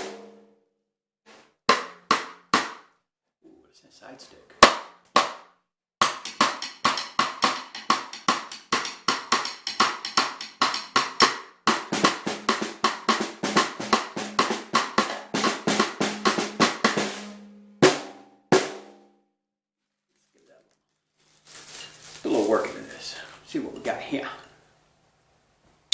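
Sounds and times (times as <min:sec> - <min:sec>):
snare drum struck with sticks: 0:01.7 - 0:02.8, 0:04.6 - 0:05.4, 0:06.0 - 0:18.9.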